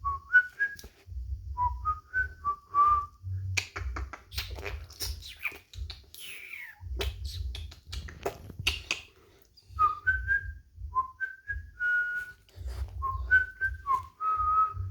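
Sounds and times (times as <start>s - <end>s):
person whistling short notes: 0.0s - 0.9s, 9.6s - 14.9s
rustling: 11.8s - 14.8s.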